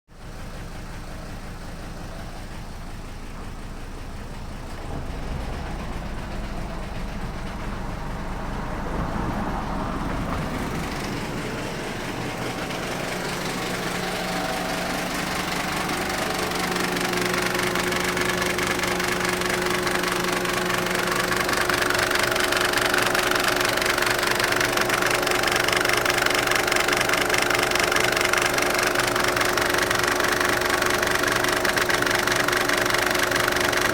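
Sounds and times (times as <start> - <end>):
diesel engine idling rough: 0.1 - 33.9
steady whine: 4.6 - 31.2
strange noise near belt tensioner: 4.6 - 33.9.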